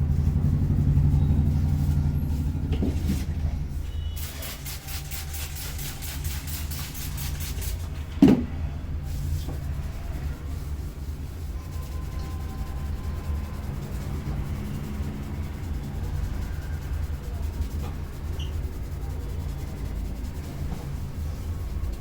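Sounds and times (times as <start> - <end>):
steady low rumble: 0.0 - 3.9.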